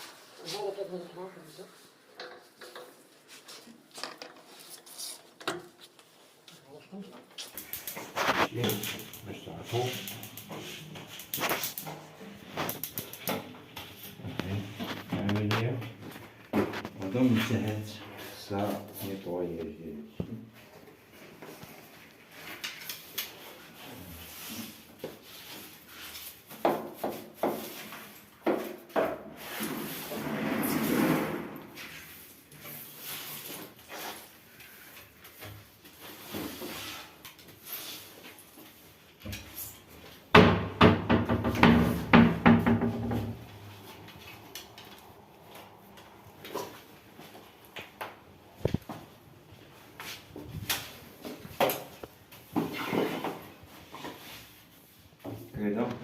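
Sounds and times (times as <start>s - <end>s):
rubbing and scraping on worktop: 7.4s - 9.1s.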